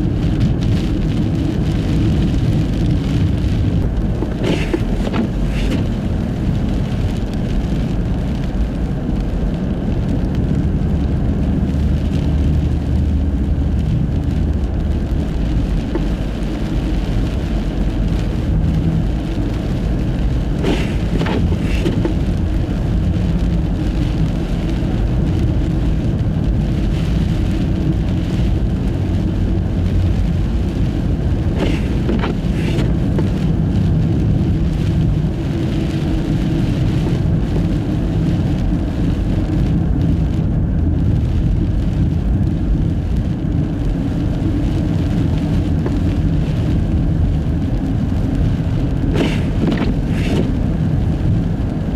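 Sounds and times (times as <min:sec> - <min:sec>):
tyre and wind rumble: 0:00.0 - 0:51.9.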